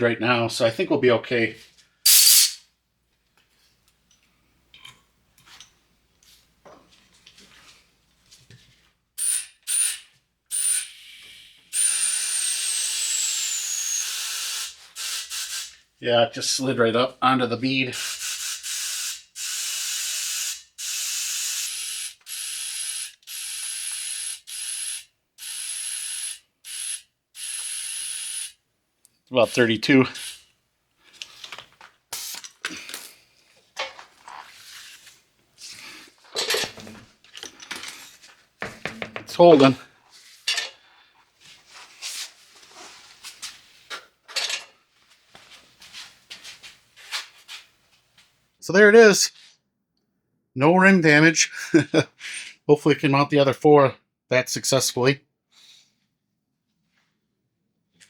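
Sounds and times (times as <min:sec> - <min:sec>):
compressed air hissing at tire valve: 0:02.1 - 0:02.6, 0:10.5 - 0:15.8, 0:18.0 - 0:21.8
compressed air hissing into tire: 0:02.1 - 0:02.6
high whistle: 0:02.1 - 0:02.6, 0:10.6 - 0:15.6.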